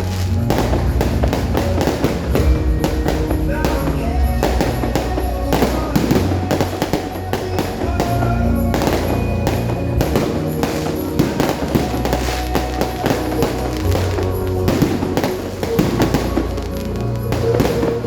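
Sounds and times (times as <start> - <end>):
fireworks banging: 0.0 - 18.0
music playing: 0.0 - 18.0.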